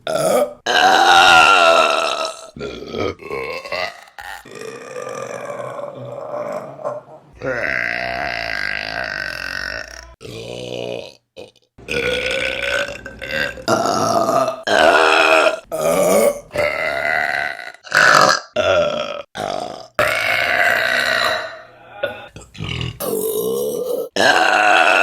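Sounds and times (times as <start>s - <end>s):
women burping loudly: 0.0s - 25.0s.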